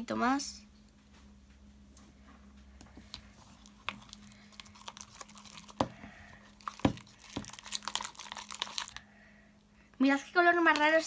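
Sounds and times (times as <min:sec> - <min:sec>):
spoon stirring sticky slime: 0:02.8 - 0:09.0.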